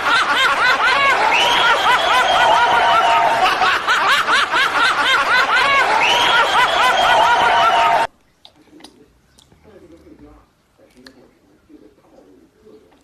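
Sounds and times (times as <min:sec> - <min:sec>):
snickering laughter: 0:00.0 - 0:08.0.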